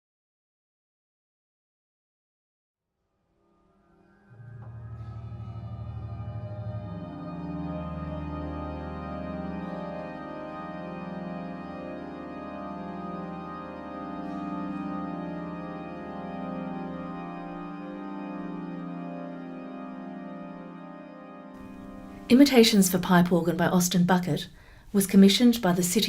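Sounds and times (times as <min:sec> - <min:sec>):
pipe organ sustained chord: 0:03.6 - 0:22.8.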